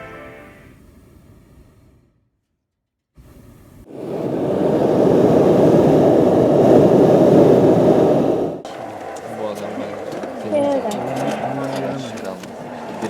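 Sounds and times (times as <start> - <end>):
propane burner roaring: 3.2 - 13.0.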